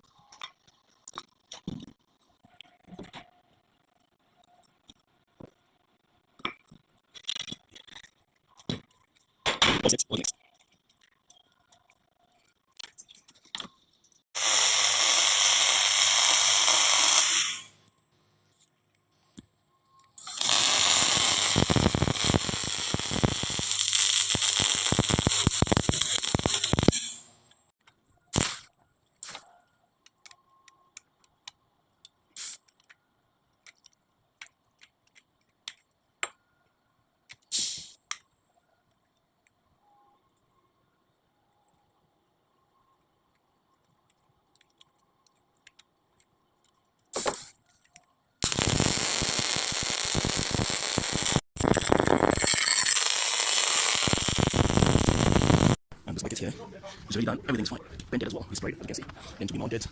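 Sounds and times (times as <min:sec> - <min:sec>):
short tack weld bursts: 0:14.4 - 0:17.7, 0:20.2 - 0:27.2, 0:28.3 - 0:28.7, 0:48.4 - 0:55.8
welding arc hissing and crackling: 0:14.4 - 0:17.7, 0:20.2 - 0:27.2, 0:28.4 - 0:28.6, 0:37.5 - 0:38.0, 0:48.4 - 0:55.8.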